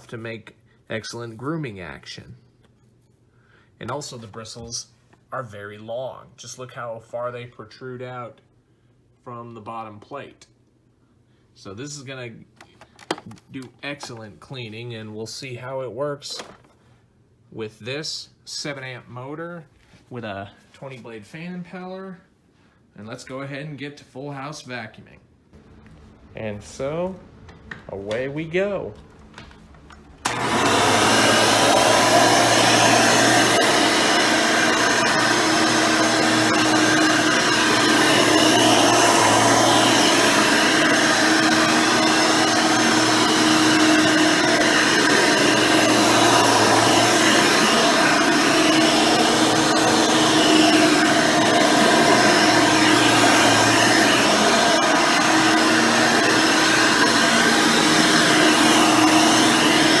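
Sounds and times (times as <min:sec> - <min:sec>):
vacuum cleaner running on carpet: 0:30.2 - 1:00.0.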